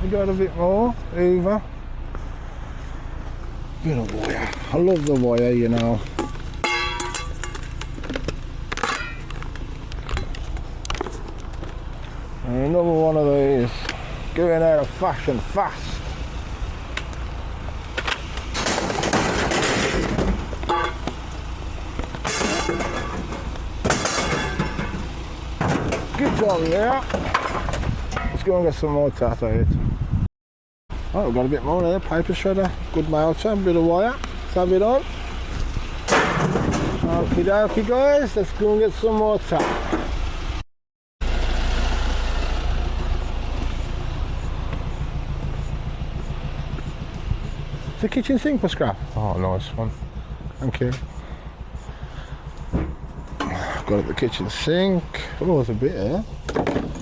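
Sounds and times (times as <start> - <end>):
vehicle engine running: 0.0 - 28.9, 30.9 - 40.6, 41.2 - 57.0
road noise: 0.0 - 30.3, 30.9 - 57.0
rattling metal clatter: 4.9 - 11.8, 17.9 - 28.4, 35.2 - 38.0, 39.5 - 40.2, 56.2 - 57.0
ringing metal clang: 6.2 - 7.8, 8.8 - 9.3, 18.6 - 21.1, 22.2 - 26.9.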